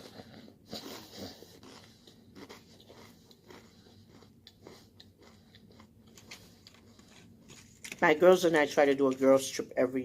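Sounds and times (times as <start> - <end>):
person chewing: 0.0 - 8.0.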